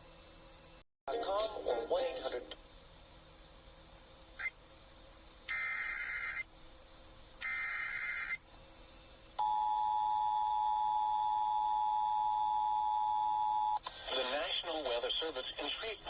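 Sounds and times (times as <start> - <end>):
digital header data bursts: 5.5 - 6.5, 7.4 - 8.4.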